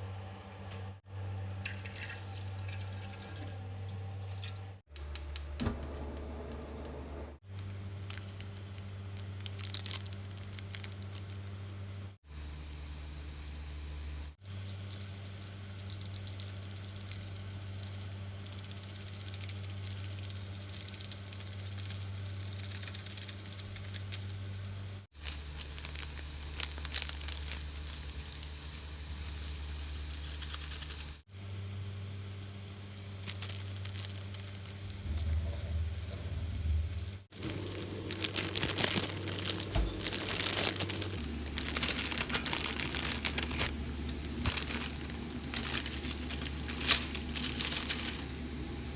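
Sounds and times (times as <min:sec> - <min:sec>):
food crinkling and crackling: 0:07.4 - 0:12.2, 0:14.5 - 0:31.6, 0:32.3 - 0:48.9
steady low hum: 0:31.6 - 0:48.9.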